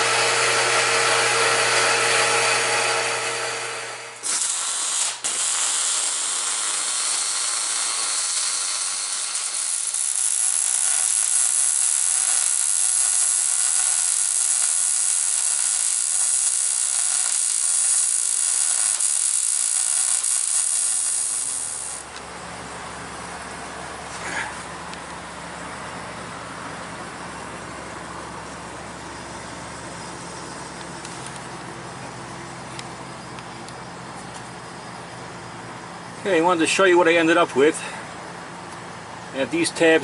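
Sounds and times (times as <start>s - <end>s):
arc welding crackling hiss: 4.1s - 22.2s.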